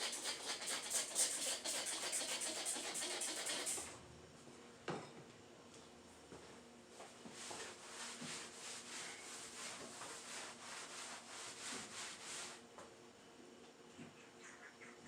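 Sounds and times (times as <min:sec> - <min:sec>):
cloth rag scrubbing a surface: 0:00.0 - 0:03.8, 0:07.2 - 0:12.6.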